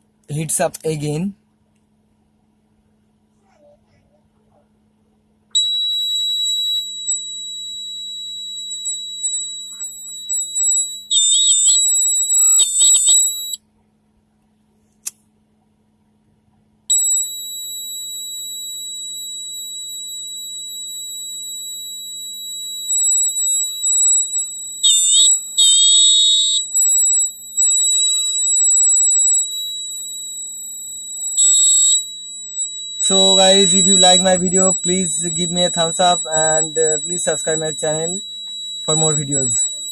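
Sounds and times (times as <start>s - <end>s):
piezo buzzer high-pitched tone: 5.6s - 13.6s, 16.9s - 39.9s.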